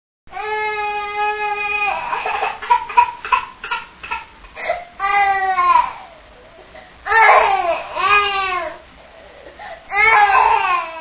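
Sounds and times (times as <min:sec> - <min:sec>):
baby crying: 0:00.3 - 0:06.2, 0:07.1 - 0:08.8, 0:09.9 - 0:11.0.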